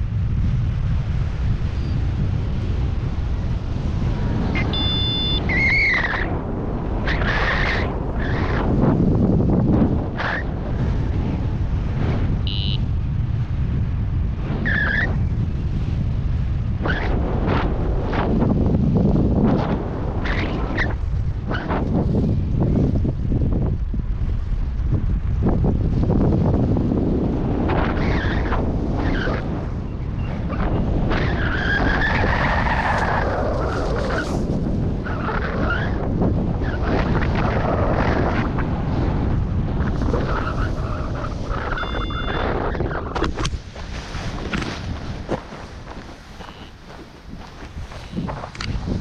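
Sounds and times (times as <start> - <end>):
wind buffeting microphone: 0.0 - 49.0
short high beep: 4.6 - 5.5, 12.5 - 12.9, 41.7 - 42.4, 46.4 - 46.8
high whistling tone: 4.6 - 5.8, 41.7 - 42.4
wavering chirp: 12.5 - 12.8, 41.7 - 42.4.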